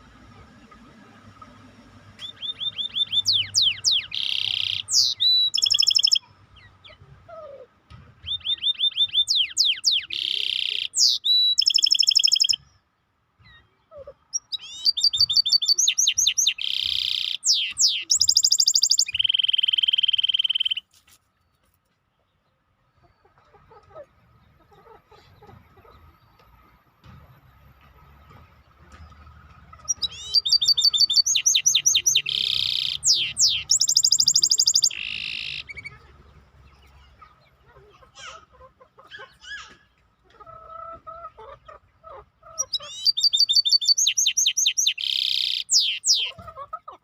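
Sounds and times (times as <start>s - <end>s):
songbird singing trills: 0.0s - 12.8s, 13.4s - 20.9s, 28.0s - 38.4s, 42.4s - 46.4s.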